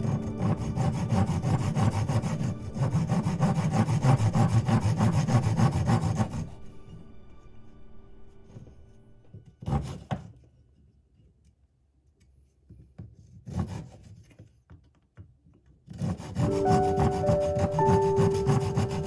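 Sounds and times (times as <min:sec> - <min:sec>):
saw scraping through wood: 0:00.0 - 0:06.8, 0:09.6 - 0:10.4, 0:13.4 - 0:14.2, 0:15.9 - 0:19.0.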